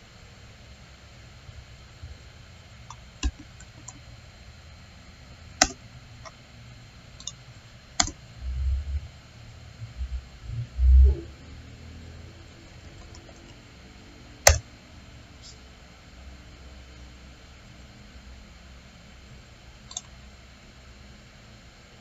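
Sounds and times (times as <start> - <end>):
computer mouse clicking: 2.9 - 4.0, 5.6 - 6.4, 7.2 - 7.4, 8.0 - 8.2, 12.8 - 13.6, 19.8 - 20.2
low dull thumps: 8.4 - 11.4.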